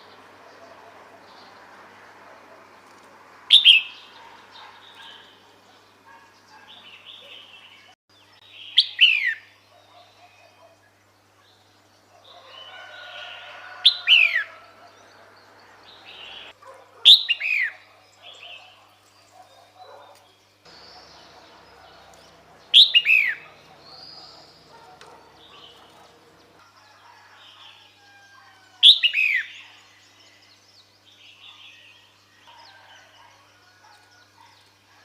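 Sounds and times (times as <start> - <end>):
bulbul sharp falling calls: 20.7 - 26.6.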